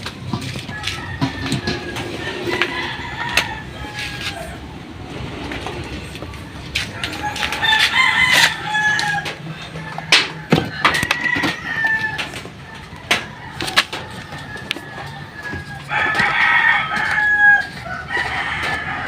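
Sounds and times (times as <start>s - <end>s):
rooster crowing: 0.3s - 19.0s.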